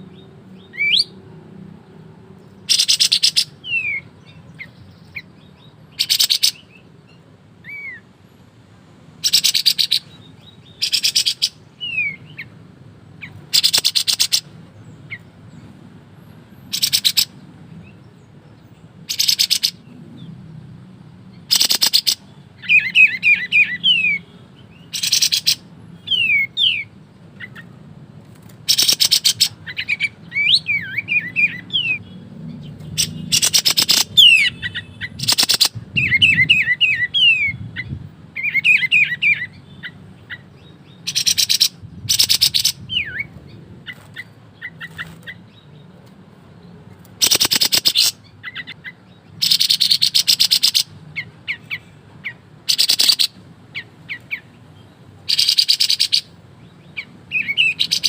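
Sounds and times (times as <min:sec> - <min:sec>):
bird buzzy rattling bursts: 0:47.2 - 0:48.1.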